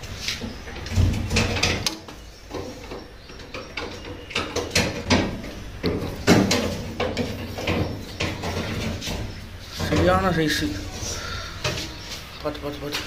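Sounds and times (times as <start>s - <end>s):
washing machine parts knocking: 0.7s - 10.6s.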